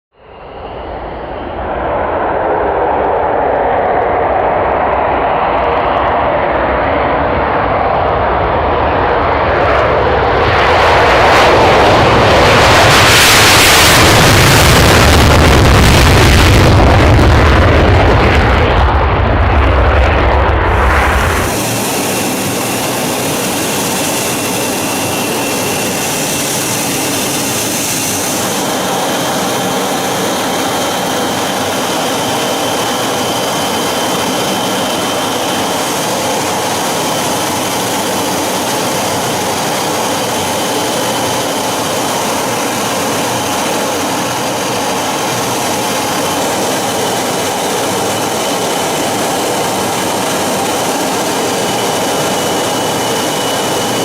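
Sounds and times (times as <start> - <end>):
jet engines running: 0.1 - 54.0.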